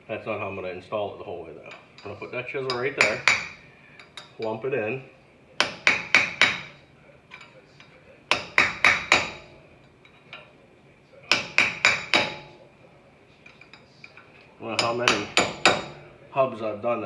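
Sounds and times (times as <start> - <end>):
hammer striking metal chisel: 2.7 - 4.6, 5.6 - 10.5, 11.3 - 12.7, 13.5 - 16.1.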